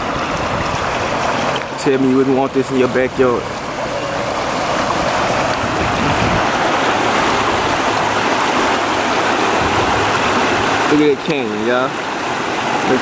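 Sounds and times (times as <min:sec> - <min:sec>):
water rushing over waterfall: 0:00.0 - 0:13.0.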